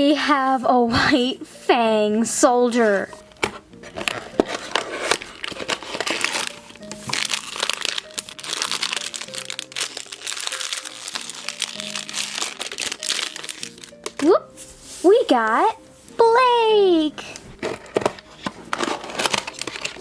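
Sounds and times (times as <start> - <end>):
background music with held notes: 0.0 - 20.0
packaging crinkling and tearing: 3.2 - 14.3, 17.6 - 20.0.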